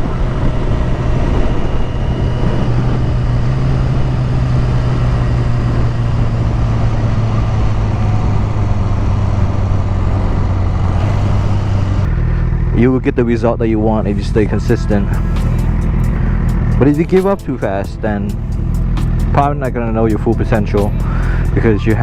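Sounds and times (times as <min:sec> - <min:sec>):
motorcycle engine running: 0:00.0 - 0:22.0
wind noise: 0:00.0 - 0:22.0.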